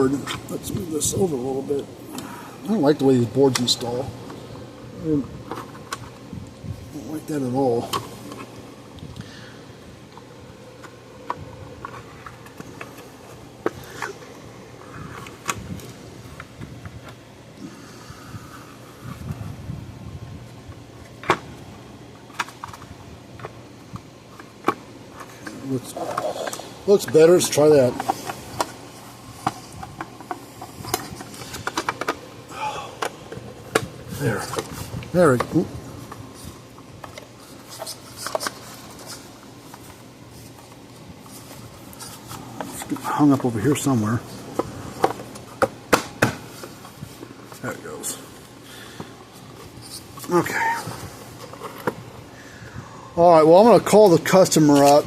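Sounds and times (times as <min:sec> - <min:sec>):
plastic parts clicking and knocking: 0:29.4 - 0:32.2.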